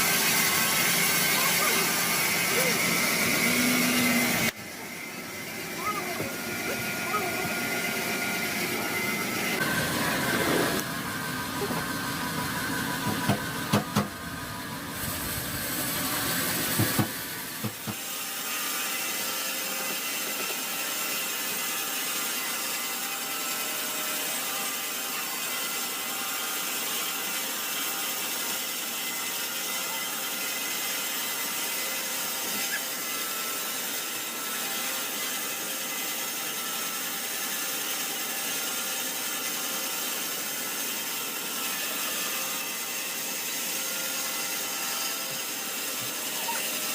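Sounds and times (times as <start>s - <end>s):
sawmill saw cutting log: 0.0s - 46.9s.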